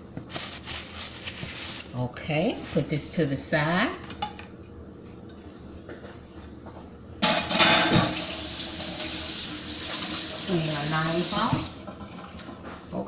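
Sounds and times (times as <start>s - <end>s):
sink tap clattering: 7.2s - 10.5s
water running into sink: 7.4s - 12.8s.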